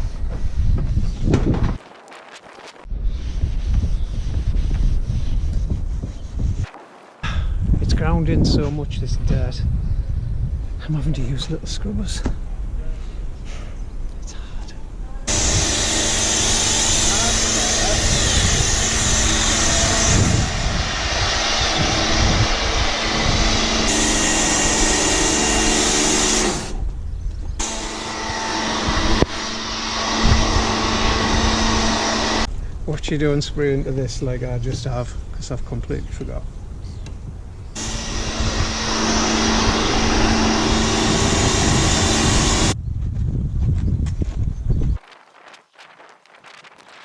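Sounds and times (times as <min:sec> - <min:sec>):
water spray hissing: 0:06.6 - 0:07.4
pressure washer motor hum: 0:15.3 - 0:26.8, 0:27.6 - 0:32.5, 0:37.8 - 0:42.8.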